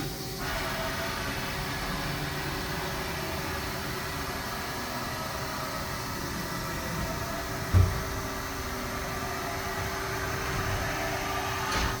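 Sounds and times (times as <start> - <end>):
machinery hum: 0.0 - 12.0
low thump: 7.6 - 8.2.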